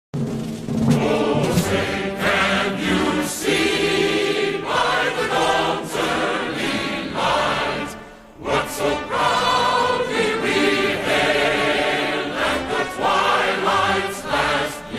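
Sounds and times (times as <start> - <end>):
choir singing: 0.9 - 14.9.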